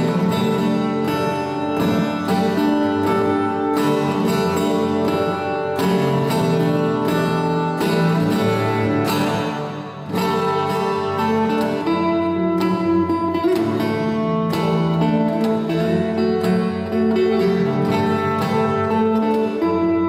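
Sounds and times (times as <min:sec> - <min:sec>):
acoustic guitar playing: 0:00.0 - 0:20.0.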